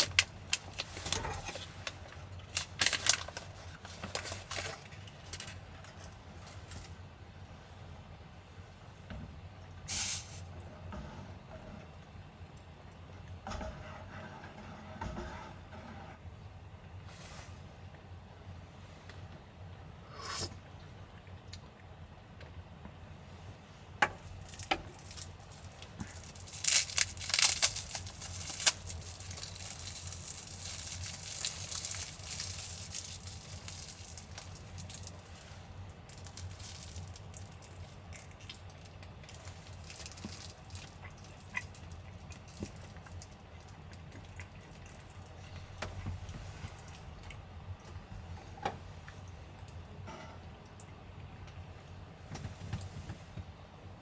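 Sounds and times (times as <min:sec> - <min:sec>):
packaging crinkling and tearing: 0:00.0 - 0:06.9, 0:24.4 - 0:43.4
low steady hum: 0:00.0 - 0:54.0.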